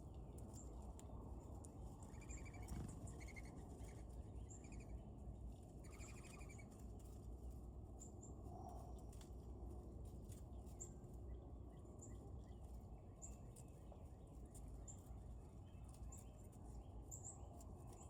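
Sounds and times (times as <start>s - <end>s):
low background rumble: 0.0s - 18.0s.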